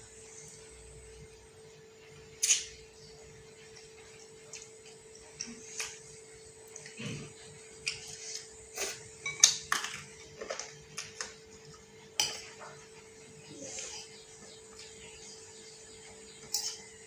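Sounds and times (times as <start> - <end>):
cutlery scraping a bowl: 12.2 - 12.8, 13.6 - 14.2, 16.5 - 17.0.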